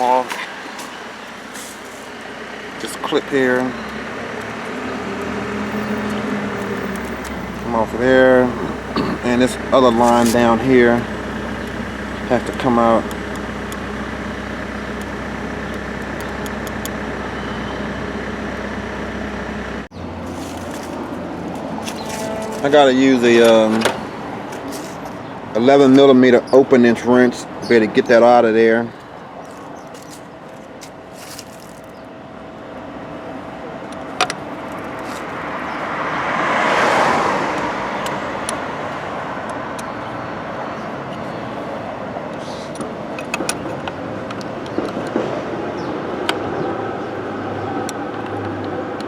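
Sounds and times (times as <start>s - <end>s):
vehicle passing by: 0.0s - 13.1s, 34.8s - 39.8s
street traffic hum: 0.0s - 49.0s.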